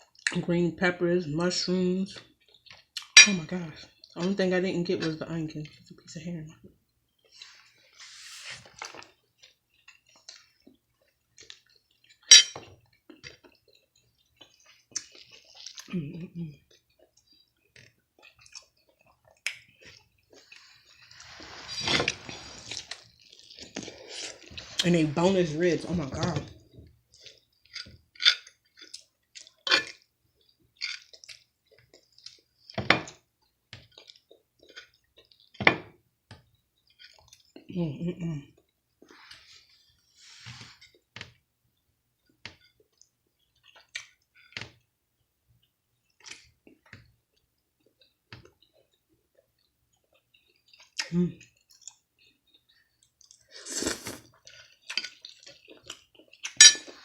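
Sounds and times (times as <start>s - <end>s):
person chewing with mouth open: 2.2s - 3.3s, 8.6s - 12.4s, 13.0s - 24.9s, 26.6s - 32.8s, 33.8s - 35.6s, 36.8s - 37.7s, 45.6s - 57.0s
cutlery clinking on a plate: 12.3s - 12.7s, 56.5s - 57.0s.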